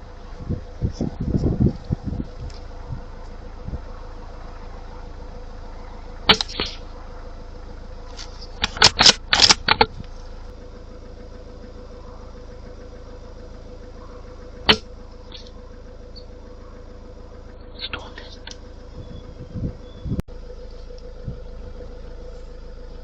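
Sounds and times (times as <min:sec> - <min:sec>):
steady low hum: 0:00.0 - 0:23.0
suppressed rifle cracks: 0:06.3 - 0:06.9, 0:08.2 - 0:09.9.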